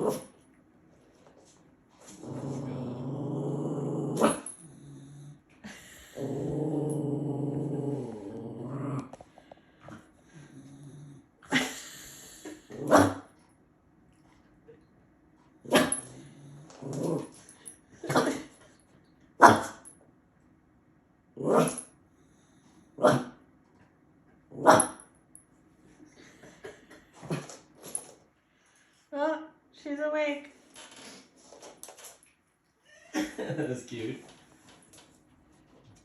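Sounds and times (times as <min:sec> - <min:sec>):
dog growling grumbles: 0:02.0 - 0:11.7, 0:15.7 - 0:18.4, 0:21.4 - 0:21.9.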